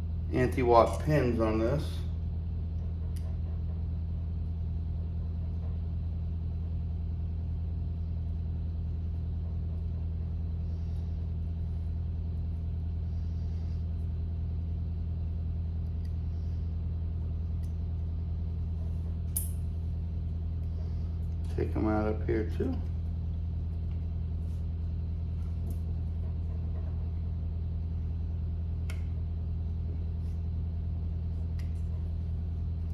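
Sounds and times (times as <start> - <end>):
steady low hum: 0.0 - 32.9
small metal tools clicking: 19.4 - 19.6.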